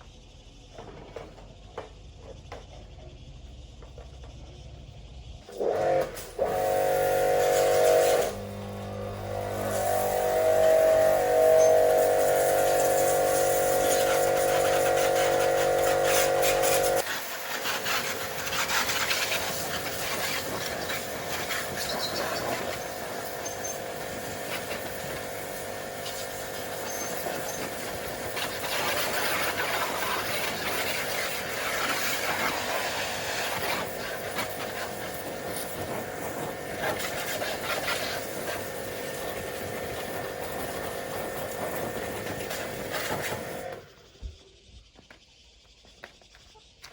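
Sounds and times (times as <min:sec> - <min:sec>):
machine humming loudly: 0:05.5 - 0:17.0
uneven rushing hiss: 0:09.3 - 0:46.8.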